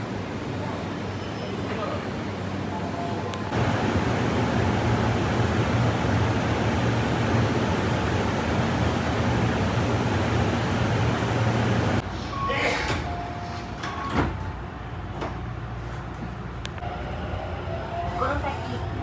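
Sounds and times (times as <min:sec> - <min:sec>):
train wheels rumbling on rails: 0:00.0 - 0:12.0.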